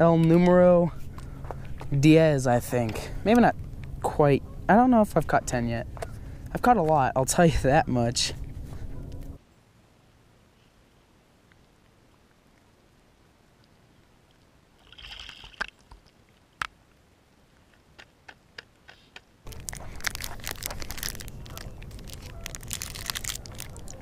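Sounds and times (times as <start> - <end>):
crackling crunching noise: 0.0 - 9.4, 11.4 - 24.0
low rumble: 1.0 - 4.8, 19.5 - 24.0.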